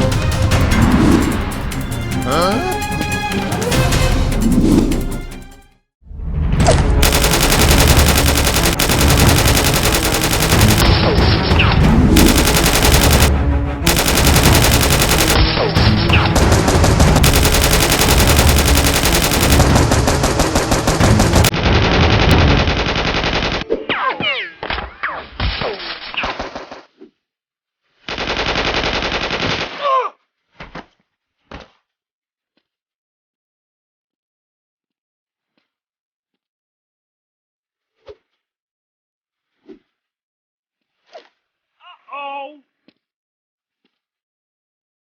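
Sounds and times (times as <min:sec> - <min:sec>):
machine-gun fire bursts: 0:07.0 - 0:11.2, 0:12.1 - 0:23.6, 0:28.1 - 0:29.8.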